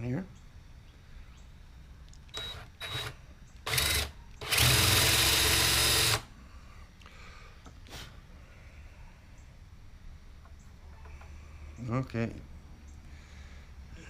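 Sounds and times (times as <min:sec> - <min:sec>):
power drill boring into wood: 0:02.3 - 0:06.3.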